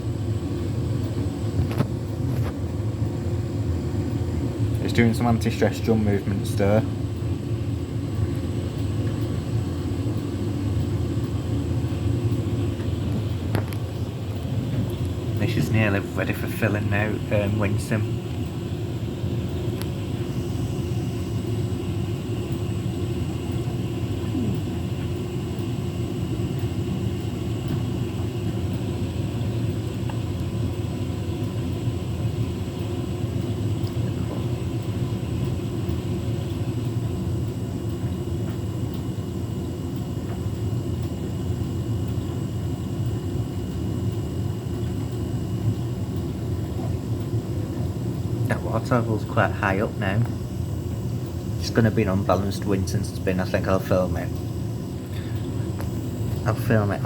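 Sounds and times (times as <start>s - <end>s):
washing machine filling with water: 0.0s - 57.0s.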